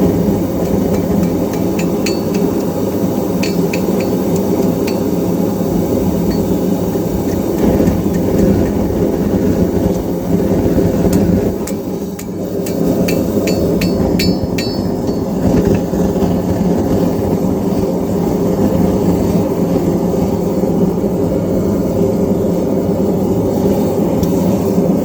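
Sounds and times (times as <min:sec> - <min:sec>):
hammer striking metal on anvil: 0:00.4 - 0:08.4, 0:11.1 - 0:16.0.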